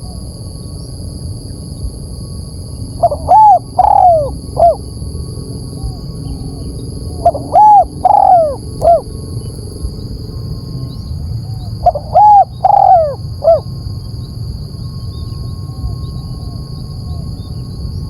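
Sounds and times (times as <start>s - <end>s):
dove cooing: 3.0s - 4.9s, 5.8s - 9.2s, 11.4s - 13.7s.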